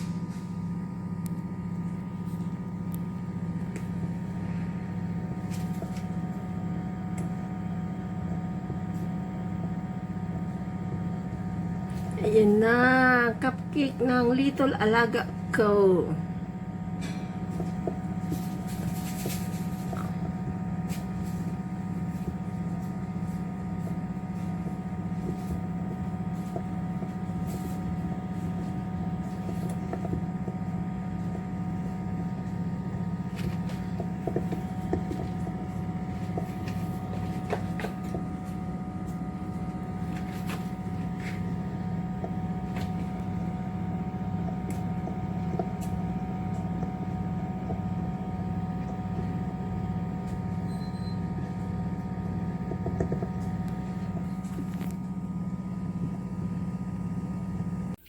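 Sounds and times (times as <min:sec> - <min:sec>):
low machine hum: 0:00.0 - 0:58.0
faint clicks and taps: 0:52.6 - 0:55.0.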